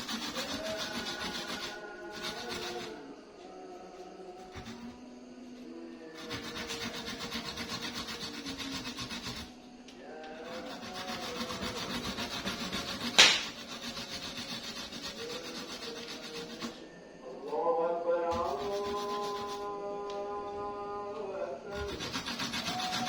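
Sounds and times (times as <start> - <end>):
root grated on hand grater: 0.0 - 3.1, 6.0 - 16.9, 18.3 - 19.7, 21.7 - 23.0
sharp knock: 13.2 - 13.6.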